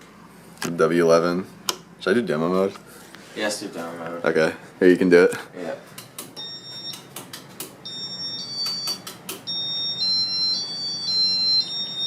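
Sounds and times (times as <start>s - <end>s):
electronic chimes: 7.8s - 12.0s.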